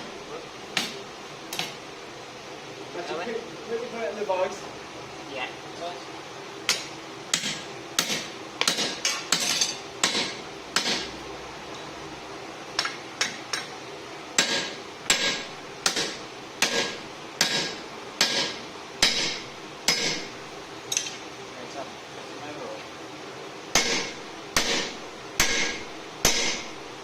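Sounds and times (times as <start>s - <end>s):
hammer blows ringing on steel: 14.4s - 20.3s, 23.8s - 26.7s.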